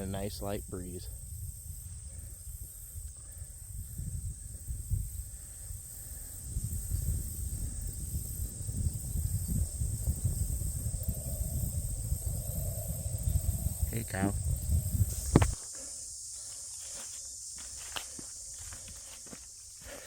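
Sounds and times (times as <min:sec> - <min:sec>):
wind buffeting microphone: 0:00.0 - 0:15.6
high-pitched insect chorus: 0:00.0 - 0:20.0.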